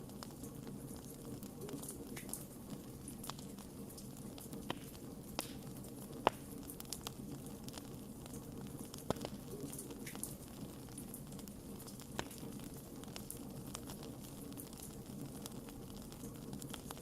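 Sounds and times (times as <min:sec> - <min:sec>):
fire crackles and pops: 0:00.0 - 0:17.0.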